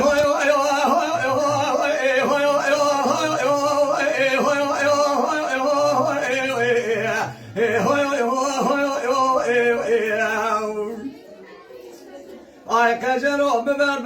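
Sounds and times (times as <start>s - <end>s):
man singing ornamented vocal line: 0.0s - 11.2s.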